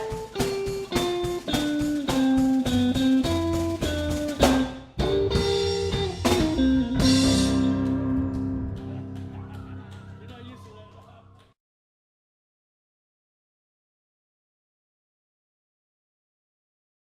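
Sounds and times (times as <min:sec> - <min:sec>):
bass guitar: 0:00.0 - 0:10.3
electric guitar melody: 0:00.0 - 0:10.3
drums: 0:00.0 - 0:10.6.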